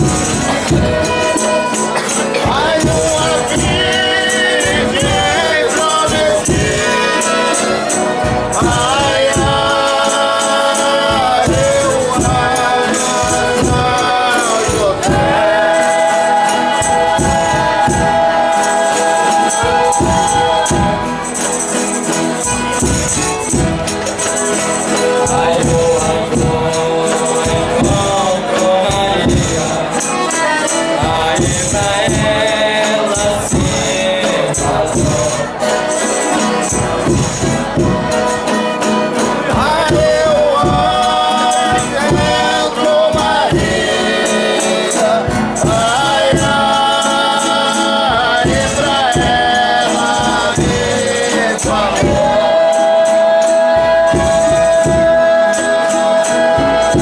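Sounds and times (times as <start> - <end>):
group of voices singing: 0.0 - 57.0
tambourine and drum beat: 0.0 - 57.0.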